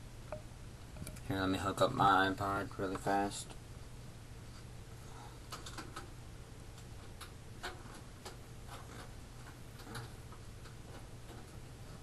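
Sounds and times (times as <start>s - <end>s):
steady low hum: 0.0s - 12.0s
faint clicks and knocks: 0.2s - 1.3s, 5.4s - 12.0s.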